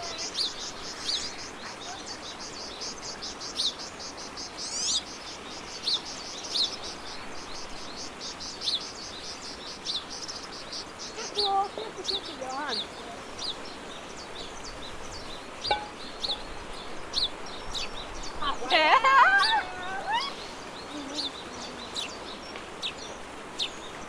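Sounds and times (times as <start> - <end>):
bird chirping: 0.0 - 18.6.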